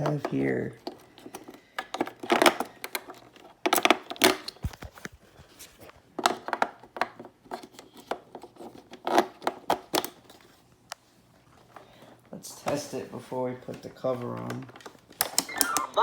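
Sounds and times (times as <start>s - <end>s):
crinkly scraping rustles: 0.0s - 15.2s
batteries clicking into toy: 15.2s - 16.0s.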